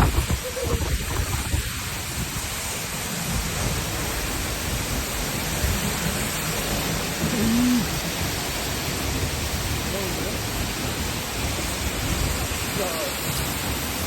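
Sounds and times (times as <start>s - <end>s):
waterfall roaring: 0.0s - 14.0s.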